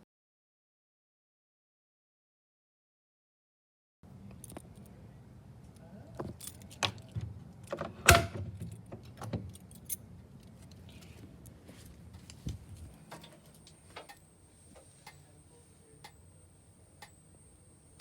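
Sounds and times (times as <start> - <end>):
faint high steady whine: 12.2 - 18.0.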